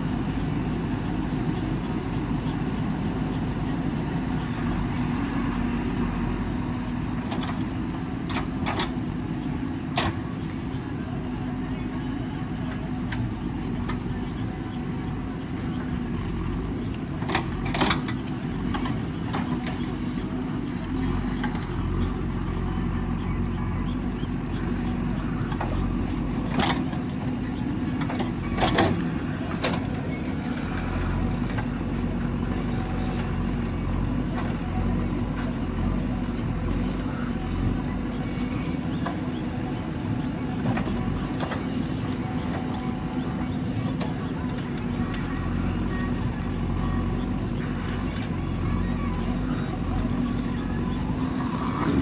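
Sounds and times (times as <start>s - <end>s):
diesel engine running: 0.0s - 52.0s.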